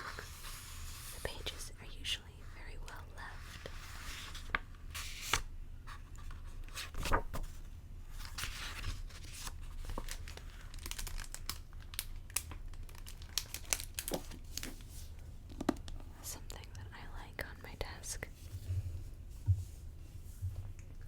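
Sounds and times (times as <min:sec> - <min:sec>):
crinkling and crackling: 0:08.2 - 0:16.6.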